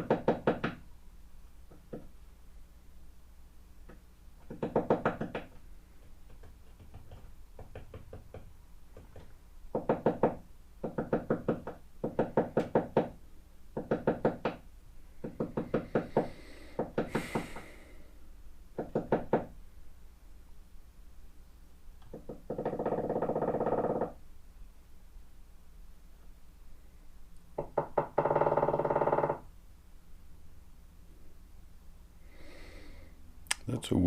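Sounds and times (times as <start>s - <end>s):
woodpecker pecking on wood: 4.4s - 13.1s.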